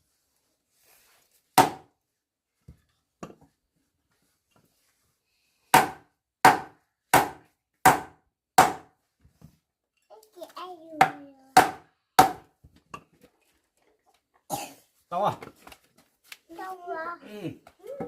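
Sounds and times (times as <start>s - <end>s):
tool striking wood: 1.6s - 1.9s, 5.7s - 8.9s, 11.0s - 12.5s.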